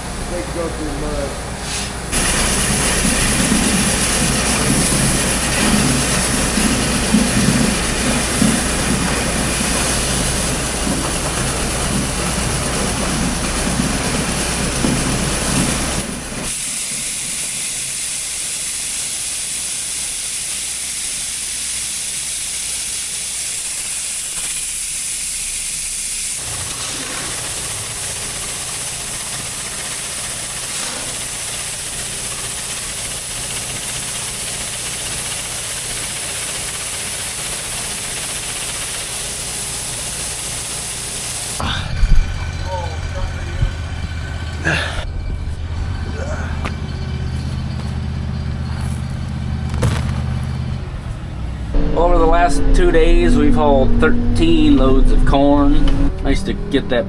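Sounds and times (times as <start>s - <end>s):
vehicle engine rumble: 41.6s - 57.0s.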